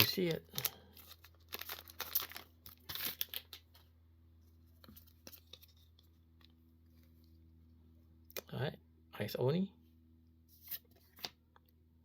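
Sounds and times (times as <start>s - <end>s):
foil wrapper tearing and crinkling: 0.0s - 3.6s.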